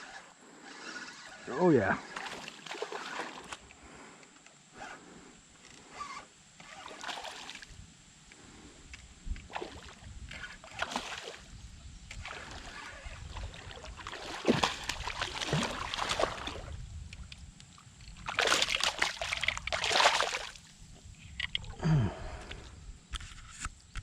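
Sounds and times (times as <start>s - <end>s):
water splashing and sloshing: 0.8s - 3.8s, 6.0s - 7.8s, 9.3s - 21.8s.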